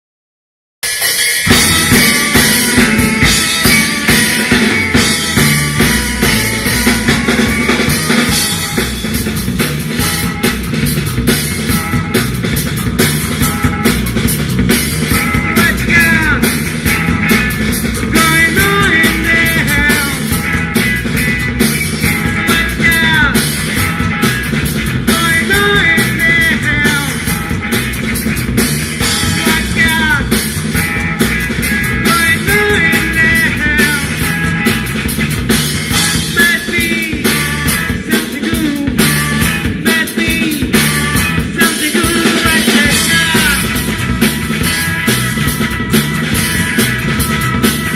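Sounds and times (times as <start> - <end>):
rock band playing: 0.8 - 47.9
bending melodic lines: 1.2 - 36.4.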